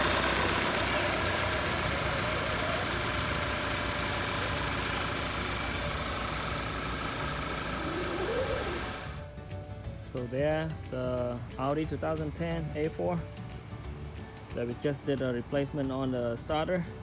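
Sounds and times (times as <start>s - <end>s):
car engine idling: 0.0s - 9.4s.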